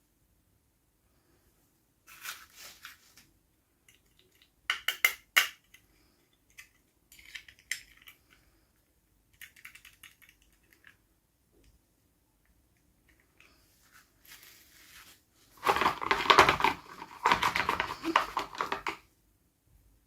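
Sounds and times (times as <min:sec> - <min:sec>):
small toy pieces clicking: 0:03.9 - 0:08.4, 0:09.3 - 0:11.0.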